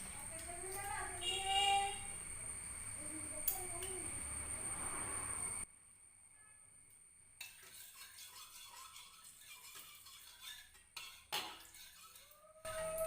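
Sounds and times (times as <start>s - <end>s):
pan and utensils rattling: 7.4s - 13.0s.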